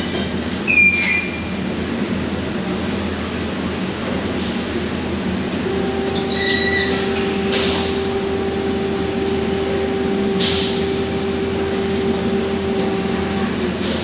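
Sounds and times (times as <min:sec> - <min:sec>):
constant industrial hum: 0:00.0 - 0:14.0
steady mechanical whine: 0:04.9 - 0:14.0
high squeaks: 0:06.1 - 0:08.1.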